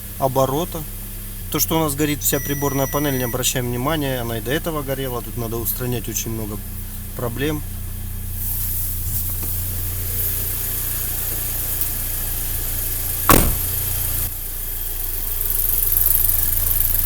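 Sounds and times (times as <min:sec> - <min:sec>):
car engine idling: 0:00.0 - 0:17.0
sharp knock: 0:13.3 - 0:13.8.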